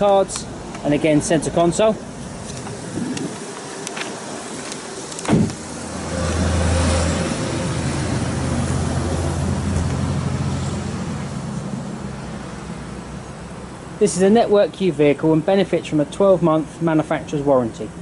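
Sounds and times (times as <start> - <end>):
diesel engine starting and idling: 2.1 - 14.0
thump: 5.2 - 5.6.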